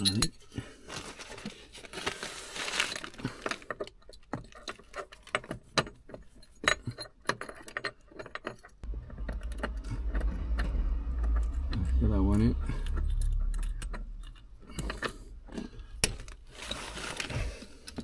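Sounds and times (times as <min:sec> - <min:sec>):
low rumble: 0:08.8 - 0:16.6.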